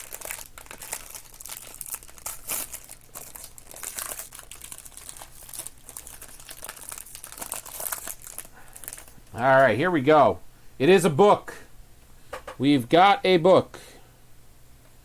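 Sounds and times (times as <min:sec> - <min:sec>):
cards crackling: 0:00.0 - 0:09.8
wrapper crinkling: 0:00.0 - 0:09.8.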